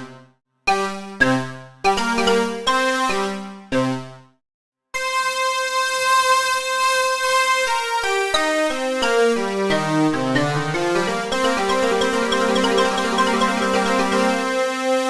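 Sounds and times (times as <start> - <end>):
synthesizer keyboard chords: 5.0 - 15.0
quick synthesizer notes: 11.0 - 14.4.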